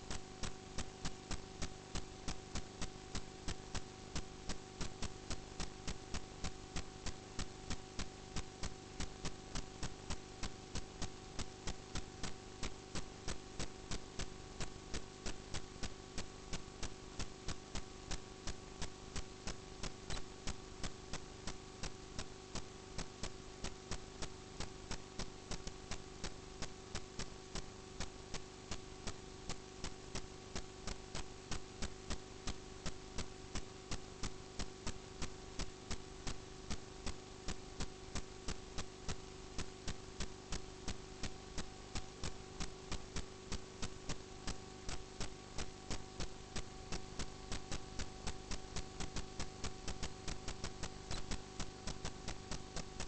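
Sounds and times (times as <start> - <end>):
steady electrical hum: 0.0 - 53.0.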